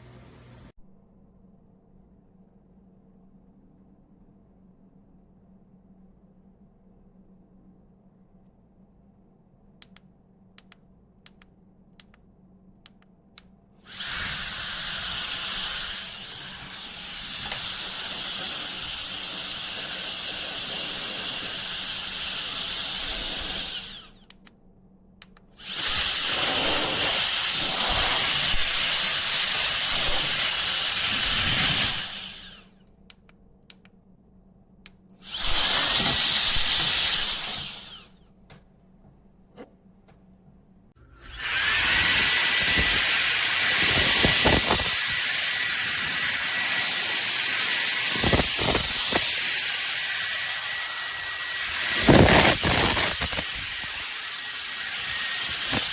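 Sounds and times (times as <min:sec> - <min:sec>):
electric air duster blowing: 0:13.9 - 0:24.2, 0:25.6 - 0:32.7, 0:35.2 - 0:38.1, 0:41.1 - 0:55.9.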